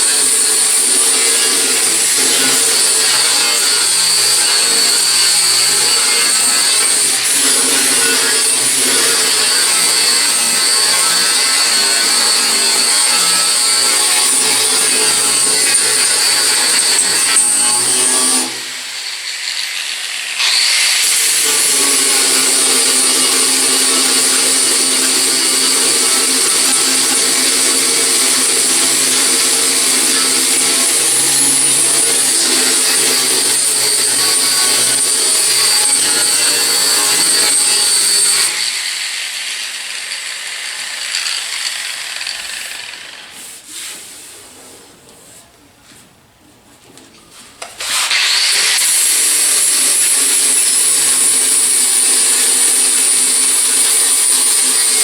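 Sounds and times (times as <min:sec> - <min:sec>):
power grinder whining on metal: 0:00.0 - 0:43.5, 0:47.7 - 0:55.0.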